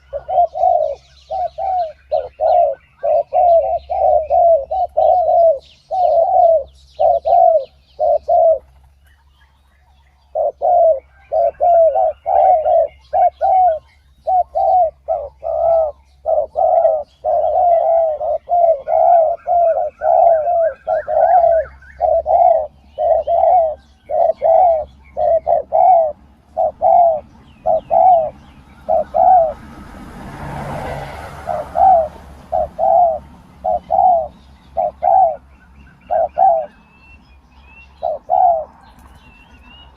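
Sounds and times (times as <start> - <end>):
doves cooing: 0.0 - 37.0, 37.8 - 39.9.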